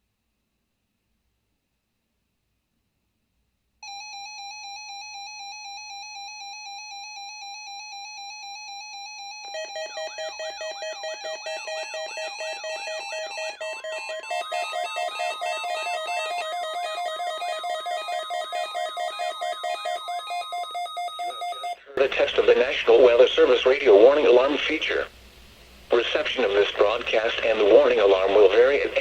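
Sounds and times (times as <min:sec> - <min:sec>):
electronic alarm tone: 0:03.8 - 0:21.9
warbling alarm: 0:03.8 - 0:21.9
pulsing alarm beep: 0:03.9 - 0:21.8.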